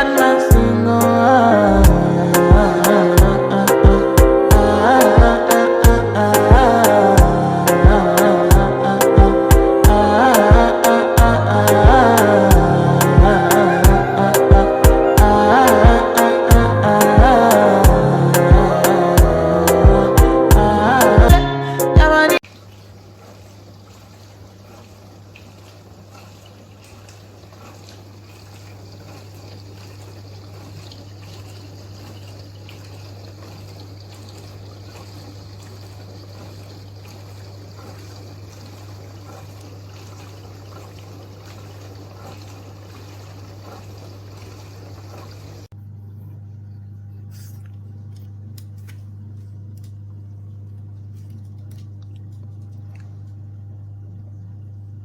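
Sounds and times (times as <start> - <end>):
dishwasher motor hum: 0.0 - 21.4, 22.0 - 55.0
water spraying in dishwasher: 22.4 - 45.7.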